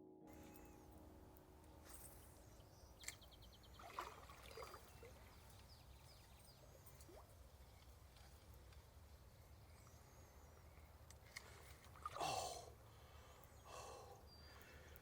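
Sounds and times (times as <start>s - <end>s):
soft breath: 11.4s - 15.0s.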